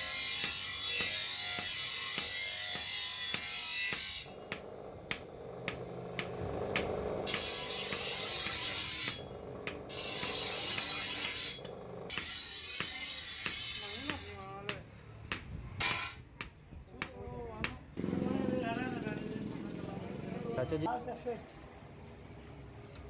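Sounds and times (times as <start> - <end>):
rasping scraping on metal blade: 6.8 - 9.3, 9.9 - 14.4.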